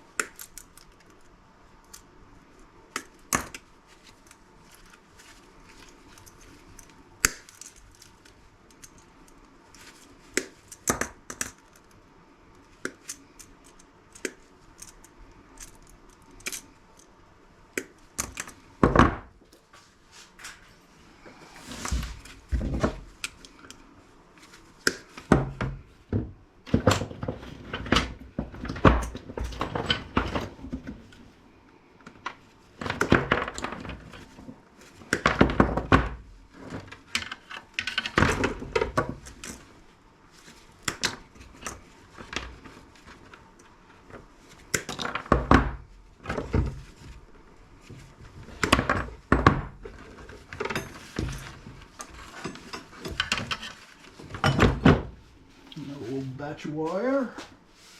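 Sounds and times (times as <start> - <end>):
parts and tools clicking and knocking: 5.7 - 12.0, 12.6 - 17.1, 17.7 - 19.6, 24.8 - 31.2, 32.0 - 39.7, 47.9 - 55.1.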